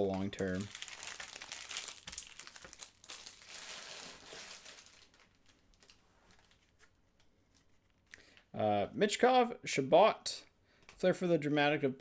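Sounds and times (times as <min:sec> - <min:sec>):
foil wrapper crinkling: 0:00.0 - 0:06.8.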